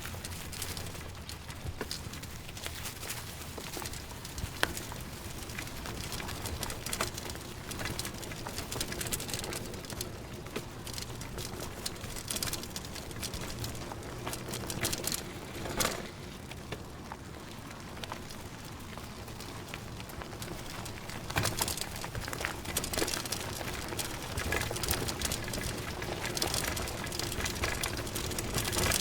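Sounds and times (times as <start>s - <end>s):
bicycle clicks and rattles: 0.0s - 29.0s.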